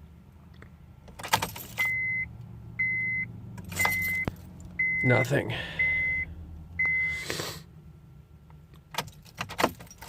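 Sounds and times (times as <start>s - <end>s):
keys jangling: 1.2s - 1.9s, 9.0s - 10.0s
dashboard chime beeping: 1.8s - 7.2s.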